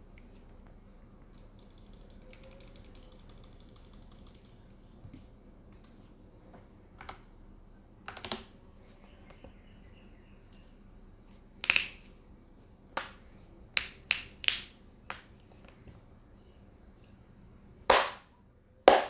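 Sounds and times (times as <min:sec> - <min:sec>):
mechanical keyboard typing: 0:01.3 - 0:04.6.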